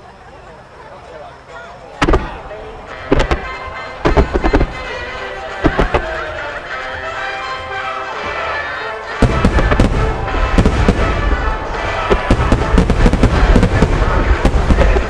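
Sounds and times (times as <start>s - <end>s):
fireworks booming and banging: 2.0s - 6.6s, 9.2s - 15.0s
music over loudspeakers: 2.0s - 15.0s.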